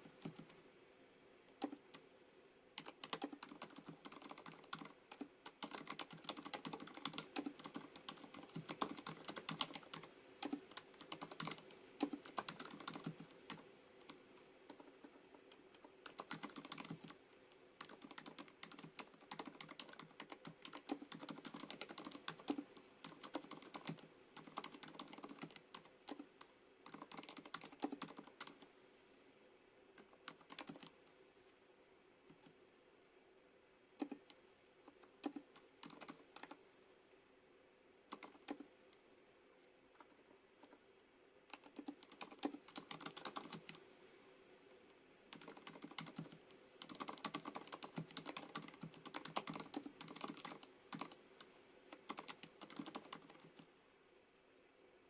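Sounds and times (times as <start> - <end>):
muffled mechanical keyboard typing: 0.0 - 0.6, 1.6 - 2.1, 2.8 - 17.2, 17.8 - 28.7, 30.0 - 31.0, 34.0 - 36.6, 38.1 - 38.7, 39.9 - 40.8, 41.5 - 43.8, 45.3 - 53.7.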